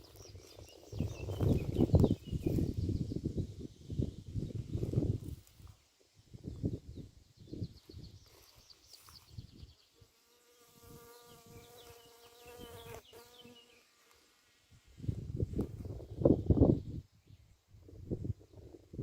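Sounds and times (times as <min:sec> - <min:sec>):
flying insect buzzing: 0:10.0 - 0:14.3.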